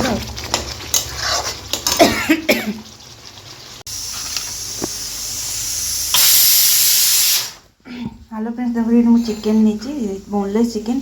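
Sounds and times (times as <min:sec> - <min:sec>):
fish sizzling in hot oil: 0:00.0 - 0:07.6
person coughing: 0:01.9 - 0:02.8, 0:07.8 - 0:08.2.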